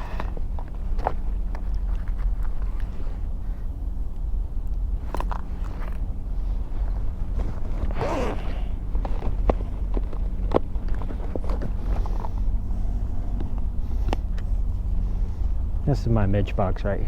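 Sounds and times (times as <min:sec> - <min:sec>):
rasping zip-like scrape: 0:07.6 - 0:08.8.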